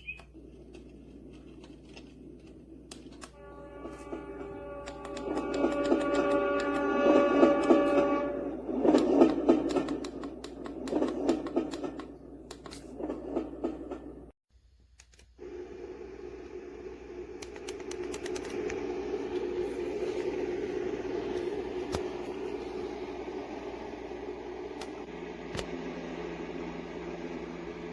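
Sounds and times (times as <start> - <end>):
pulsing clicking sound: 4.8 - 7.8, 17.4 - 18.9.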